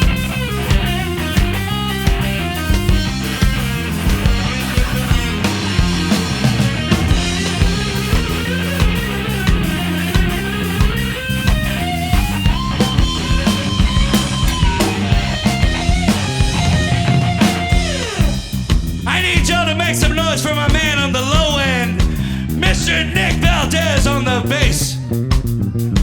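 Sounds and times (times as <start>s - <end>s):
long held lead notes: 0.0s - 18.7s
live band playing: 0.0s - 26.0s.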